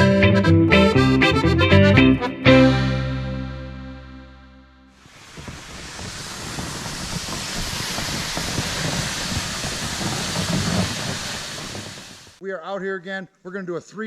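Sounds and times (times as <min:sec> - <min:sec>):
wind buffeting microphone: 0:05.0 - 0:12.4.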